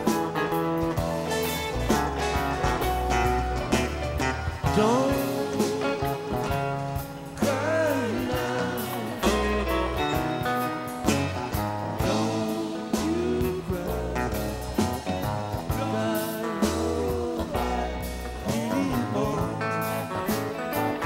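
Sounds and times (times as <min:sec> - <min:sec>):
bass and drums: 0:00.0 - 0:21.0
lead guitar bending notes: 0:00.0 - 0:21.0.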